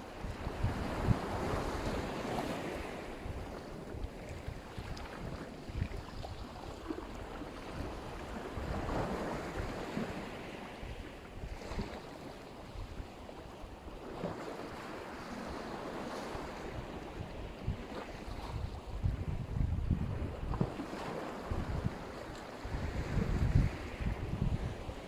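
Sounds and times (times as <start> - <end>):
surf washing ashore: 0.0 - 25.0
wind buffeting microphone: 0.2 - 12.0, 16.2 - 25.0.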